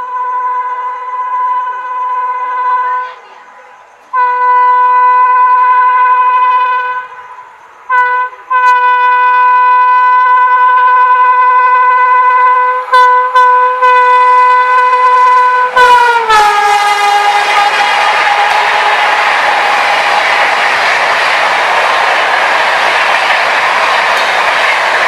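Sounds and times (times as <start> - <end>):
train horn blasts: 0.0 - 3.4, 4.1 - 19.9
train rushing and clattering: 5.6 - 25.0.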